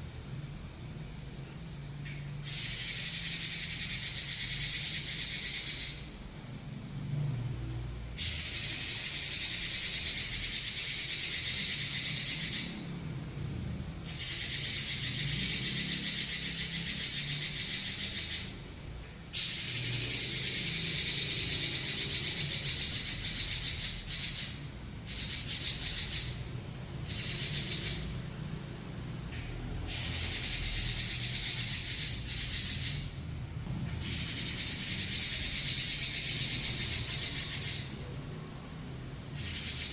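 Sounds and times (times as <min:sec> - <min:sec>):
bird singing high rolling trills: 0:02.0 - 0:06.2, 0:08.2 - 0:13.1, 0:14.0 - 0:28.4, 0:29.6 - 0:33.3, 0:34.0 - 0:38.7, 0:39.3 - 0:39.9.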